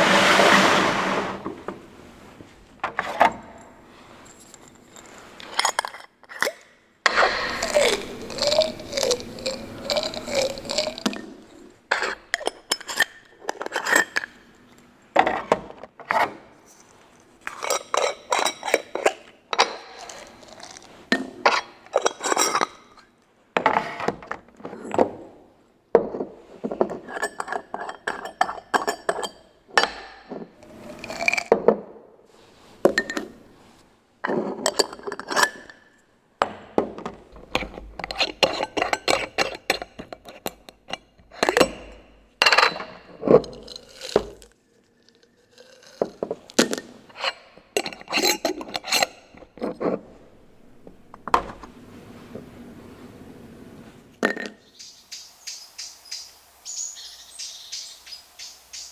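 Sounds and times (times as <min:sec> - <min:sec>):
glass jars and bottles clinking: 0:05.0 - 0:14.4, 0:17.5 - 0:23.0, 0:26.1 - 0:31.8, 0:32.9 - 0:33.4, 0:34.2 - 0:36.0, 0:36.9 - 0:44.5, 0:45.6 - 0:51.6.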